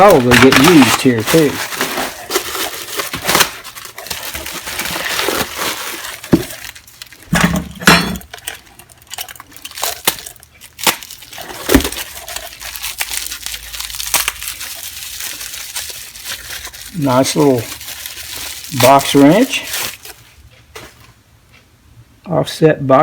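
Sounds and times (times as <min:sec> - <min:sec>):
paper wrapping rustling: 0:00.0 - 0:07.4, 0:08.2 - 0:21.2
metal tools clinking and knocking: 0:07.4 - 0:08.6.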